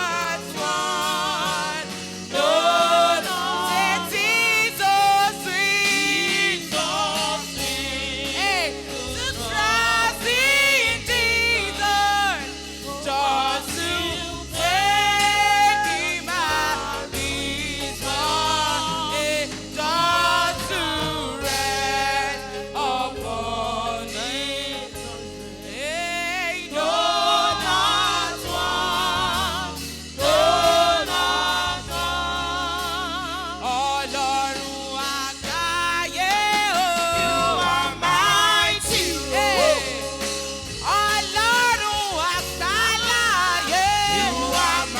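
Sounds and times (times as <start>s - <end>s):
gospel choir singing: 0.0s - 44.9s.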